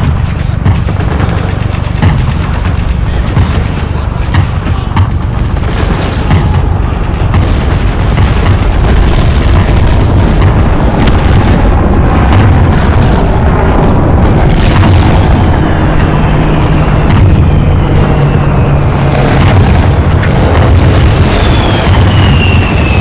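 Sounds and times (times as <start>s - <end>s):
explosions and artillery booms: 0.0s - 23.0s
sharp cracks of shots: 0.0s - 23.0s
high descending whine: 6.6s - 23.0s.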